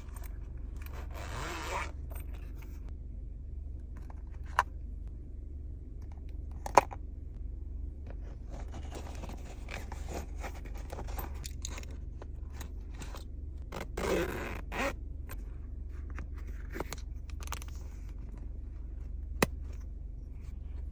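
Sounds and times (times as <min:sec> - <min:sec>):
bag rustling and scraping: 0:00.0 - 0:02.9, 0:08.3 - 0:11.8
steady low hum: 0:00.0 - 0:20.9.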